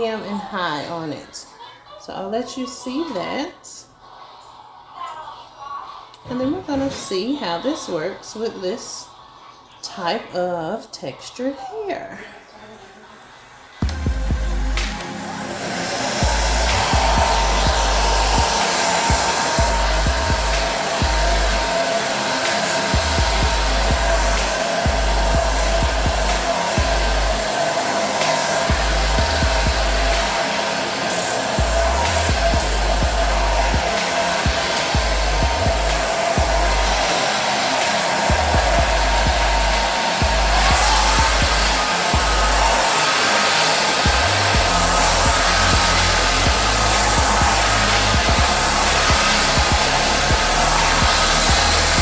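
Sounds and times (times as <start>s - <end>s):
hair dryer running: 13.2s - 52.0s
low rumbling: 16.0s - 21.7s, 23.0s - 27.4s.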